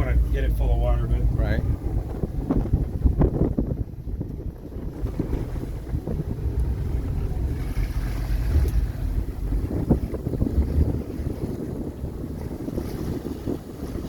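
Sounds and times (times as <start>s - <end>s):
boat engines rumbling: 0.0s - 14.0s
wind buffeting microphone: 0.0s - 14.0s.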